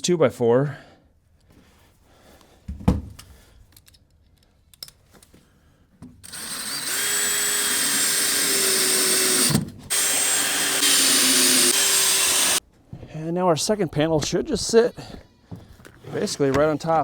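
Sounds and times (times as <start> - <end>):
power drill driving a screw: 6.2 - 12.6.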